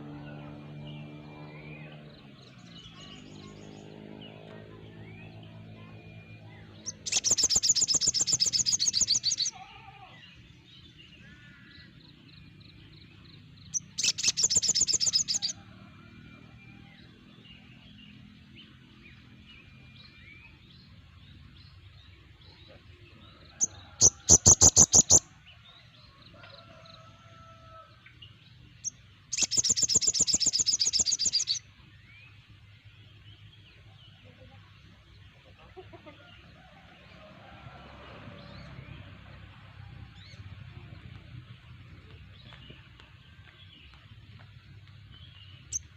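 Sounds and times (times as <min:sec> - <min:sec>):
birds rattling high calls: 0:06.8 - 0:10.1, 0:13.7 - 0:15.6, 0:23.6 - 0:25.4, 0:28.8 - 0:31.6
faint bird chirps: 0:29.3 - 0:31.6.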